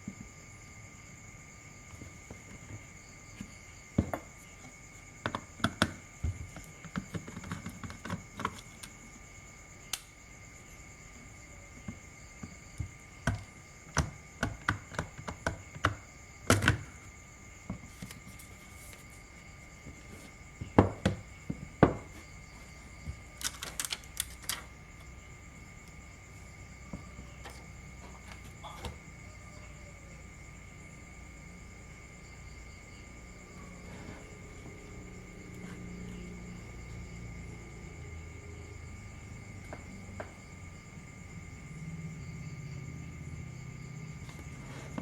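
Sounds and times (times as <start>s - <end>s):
clicks and taps on plastic parts: 5.2s - 8.9s, 12.8s - 16.9s.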